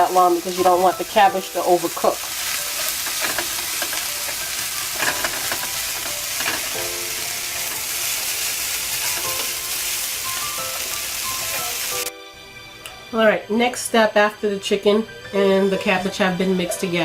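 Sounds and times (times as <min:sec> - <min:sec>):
food sizzling in a frying pan: 0:00.0 - 0:12.1
utensil scraping pan: 0:02.3 - 0:09.7.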